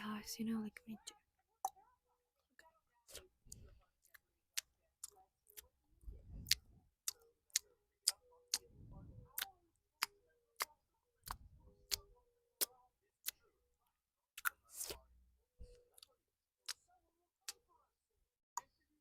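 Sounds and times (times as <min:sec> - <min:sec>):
soft wet smacking: 0:06.4 - 0:13.4
wet mouth clicks: 0:09.4 - 0:13.4.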